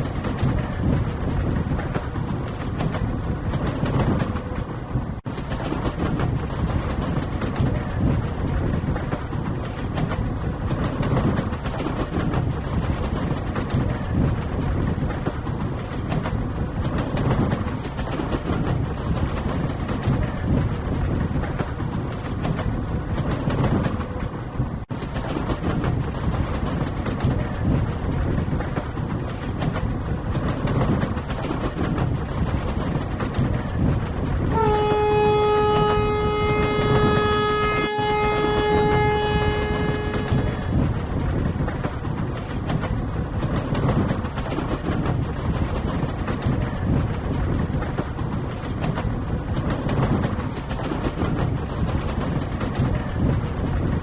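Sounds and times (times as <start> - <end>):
train rumbling on rails: 0.0 - 54.0
locomotive horn: 34.5 - 40.8.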